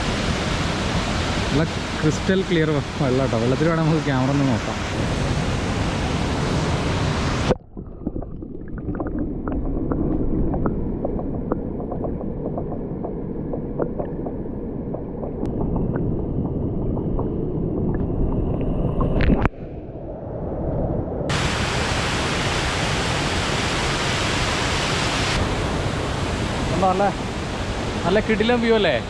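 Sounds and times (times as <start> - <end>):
waterfall rushing: 0.0 - 7.6, 21.3 - 29.0
muffled underwater rushing water: 0.0 - 29.0
bubbles popping and clicking: 7.5 - 19.5.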